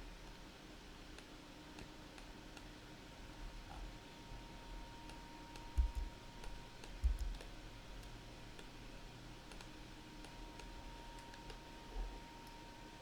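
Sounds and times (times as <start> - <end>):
computer mouse and keyboard clicks: 5.1 - 8.7, 9.4 - 11.6.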